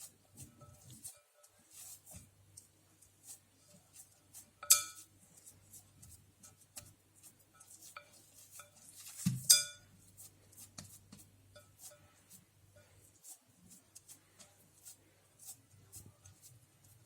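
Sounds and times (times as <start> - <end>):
utensil clinking against bowl: 4.6 - 5.1, 7.7 - 9.9.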